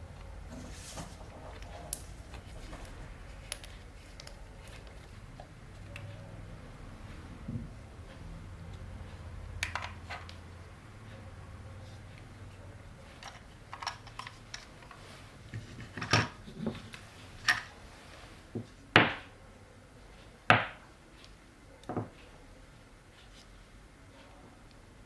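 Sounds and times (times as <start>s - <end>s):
hard objects clacking and knocking: 13.1s - 17.7s.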